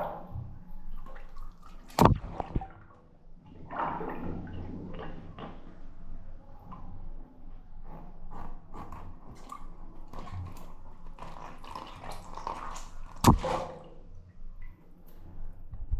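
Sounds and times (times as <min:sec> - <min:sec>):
balloon popping: 0:13.2 - 0:13.6.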